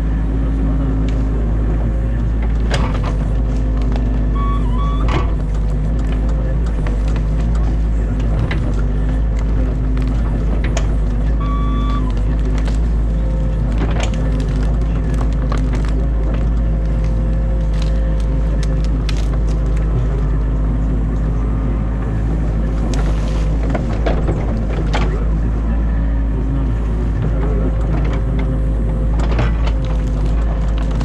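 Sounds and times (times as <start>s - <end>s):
excavator diesel engine running: 0.0s - 31.0s
branches cracking and snapping: 12.1s - 13.0s, 13.6s - 20.4s.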